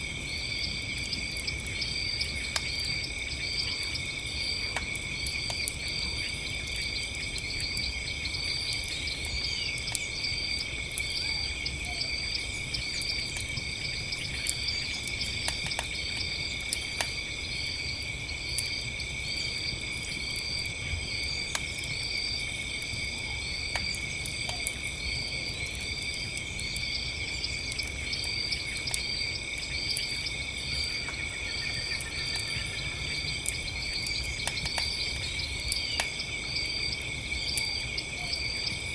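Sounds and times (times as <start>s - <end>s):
cricket chirping: 0.0s - 38.9s
crickets trilling: 0.0s - 38.9s
campfire crackling and popping: 0.1s - 38.9s.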